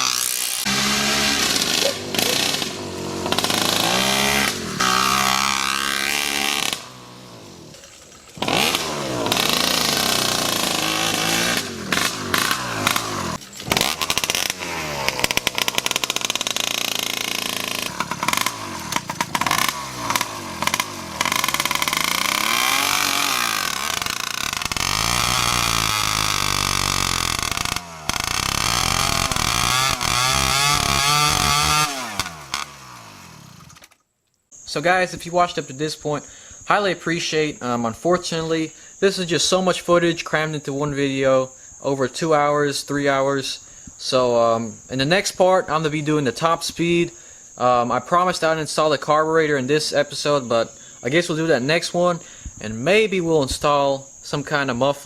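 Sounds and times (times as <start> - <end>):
two-stroke engine revving: 0.0 - 34.0.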